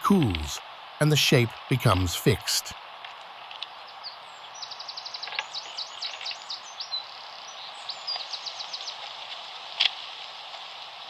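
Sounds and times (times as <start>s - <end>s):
outdoor hiss: 0.0s - 2.7s
songbird singing: 4.0s - 8.9s.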